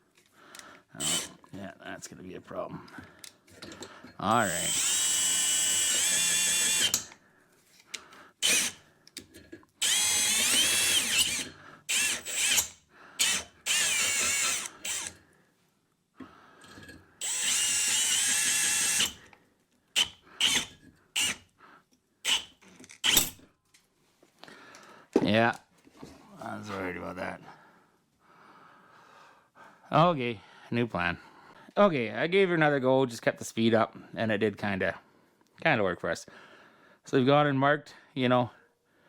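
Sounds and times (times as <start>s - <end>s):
power drill whining: 1.0s - 1.4s, 4.4s - 7.2s, 8.4s - 8.8s, 9.8s - 15.2s, 17.2s - 19.3s, 20.0s - 21.4s, 22.2s - 23.4s.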